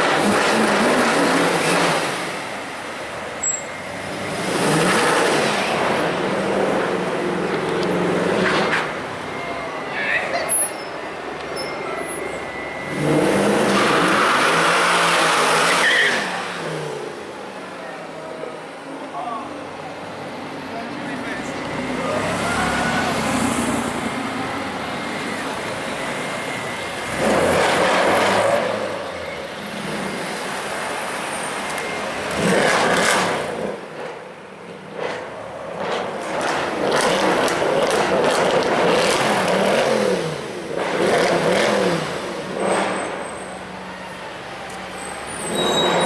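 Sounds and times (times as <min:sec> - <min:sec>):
street traffic: 0:00.0 - 0:46.0
car engine revving: 0:04.0 - 0:08.9, 0:12.8 - 0:17.4, 0:21.3 - 0:34.2, 0:34.8 - 0:43.4
car engine accelerating hard: 0:27.0 - 0:31.2, 0:32.1 - 0:34.1, 0:34.9 - 0:43.4.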